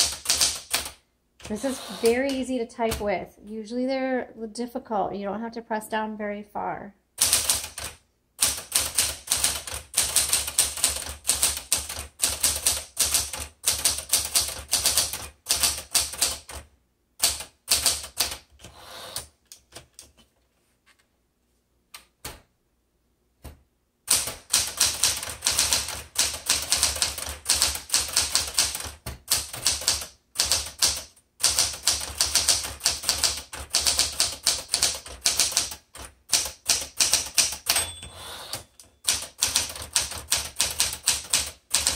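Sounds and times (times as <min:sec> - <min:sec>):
manual typewriter typing: 0:00.0 - 0:03.1, 0:07.2 - 0:16.6, 0:17.2 - 0:20.1, 0:24.1 - 0:41.9.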